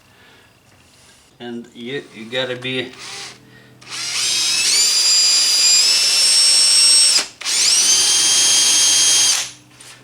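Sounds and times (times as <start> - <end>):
electric drill motor whine: 2.9 - 9.6.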